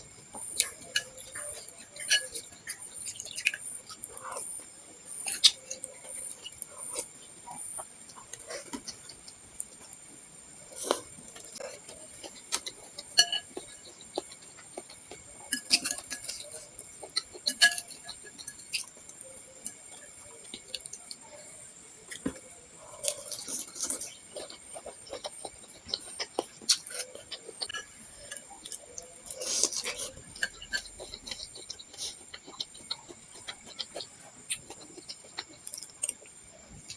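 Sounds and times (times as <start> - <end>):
spoon and fork clinking bowl: 13.2 - 13.7, 17.4 - 18.6.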